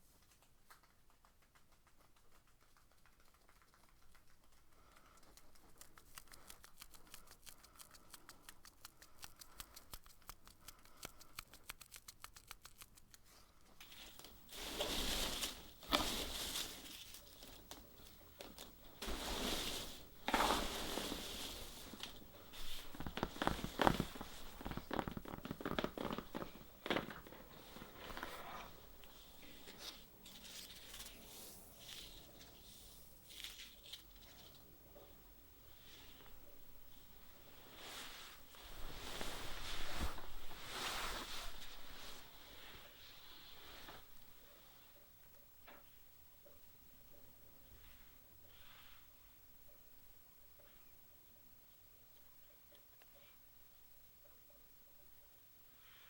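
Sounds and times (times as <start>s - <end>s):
crinkling and rustling: 0.0s - 44.3s.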